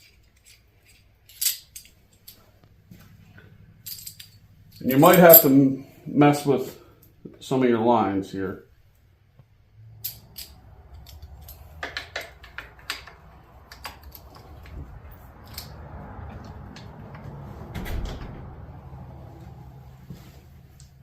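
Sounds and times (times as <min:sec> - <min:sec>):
metal parts clicking and knocking: 0:00.0 - 0:02.5, 0:10.0 - 0:15.8
low steady hum: 0:00.0 - 0:07.6, 0:08.4 - 0:21.0.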